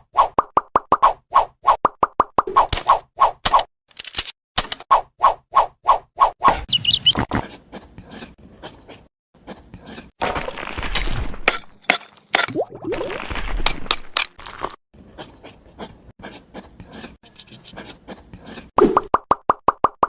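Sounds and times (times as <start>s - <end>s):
clicks and knocks of small objects: 3.9s - 4.8s.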